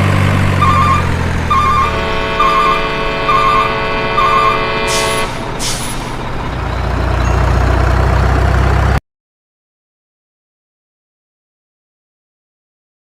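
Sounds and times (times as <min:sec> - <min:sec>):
truck engine rumble: 0:00.0 - 0:09.0
reversing alarm beeping: 0:00.6 - 0:07.7
air brake hisses: 0:04.9 - 0:06.2.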